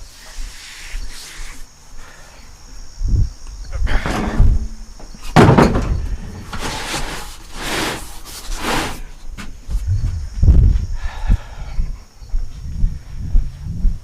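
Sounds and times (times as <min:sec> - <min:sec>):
heavy thumps of tires set down: 0:03.9 - 0:07.2.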